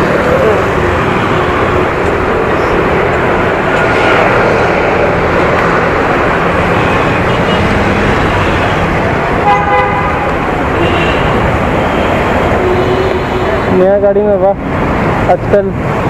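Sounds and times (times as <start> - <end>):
city road traffic: 0.0 - 16.0
vehicle horn: 9.4 - 13.8.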